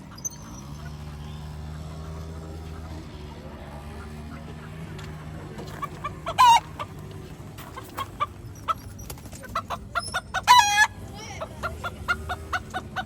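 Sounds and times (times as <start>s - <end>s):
roosters clucking: 0.0s - 13.0s
rooster calls: 10.1s - 13.0s.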